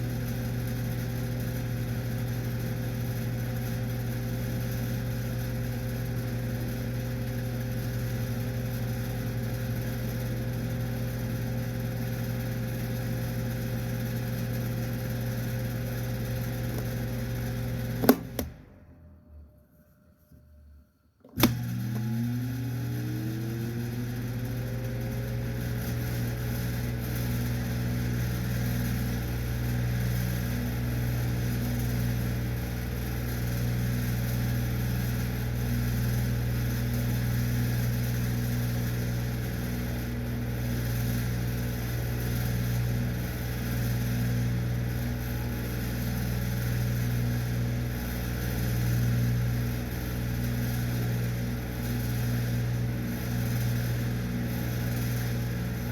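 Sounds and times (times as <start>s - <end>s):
desk fan whirring hum: 15.7s - 19.0s.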